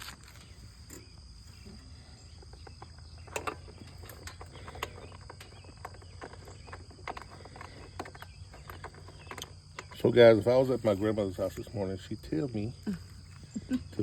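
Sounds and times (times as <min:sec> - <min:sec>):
insects droning: 0:00.0 - 0:14.0.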